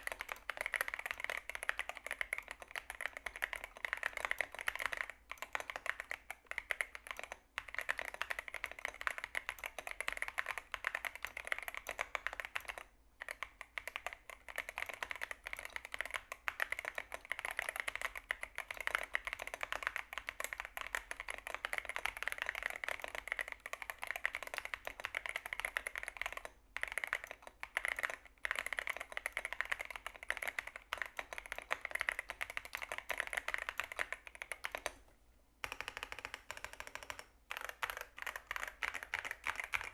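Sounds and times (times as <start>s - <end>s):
mechanical keyboard key clicks: 35.6s - 39.9s.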